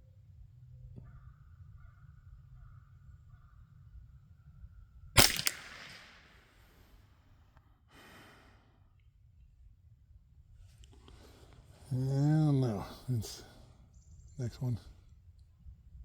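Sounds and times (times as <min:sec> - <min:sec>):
rifle shot: 0:05.2 - 0:06.7.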